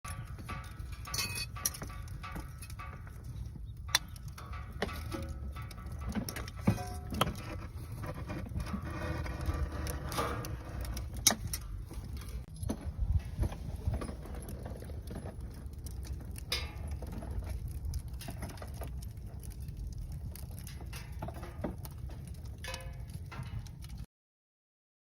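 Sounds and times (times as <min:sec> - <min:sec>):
steady low rumble: 0:00.1 - 0:24.0
wood fire crackling: 0:00.1 - 0:24.1
sharp pops of fire: 0:13.8 - 0:23.8.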